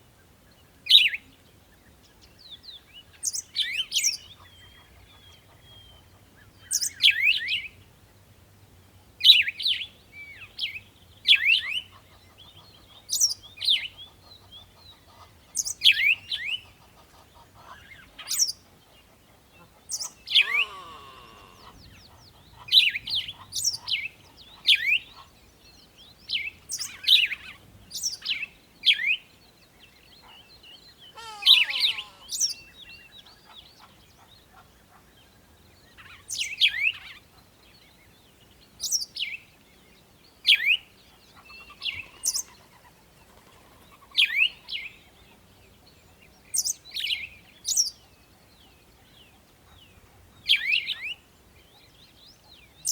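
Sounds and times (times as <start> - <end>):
bird chirping: 19.7 - 35.0.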